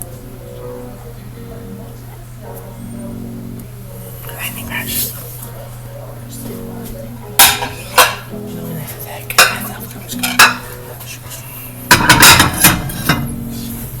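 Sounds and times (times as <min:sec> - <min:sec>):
dishes and cutlery clinking: 0:06.4 - 0:13.4.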